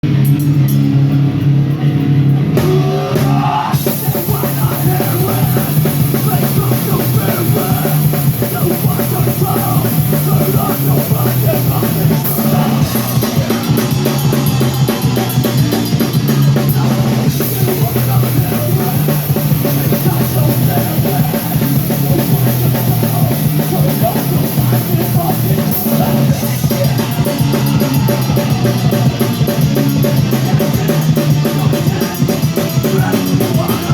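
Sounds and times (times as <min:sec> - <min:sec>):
live rock band playing: 0:00.0 - 0:33.9.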